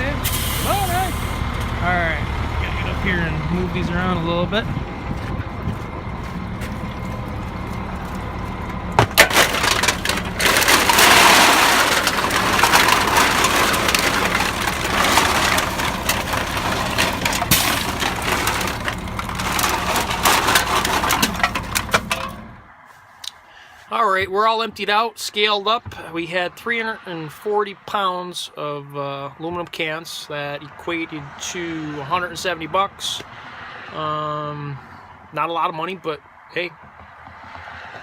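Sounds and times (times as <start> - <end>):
vehicle engine idling: 0.0 - 22.7
aluminum cans clattering: 9.0 - 22.6.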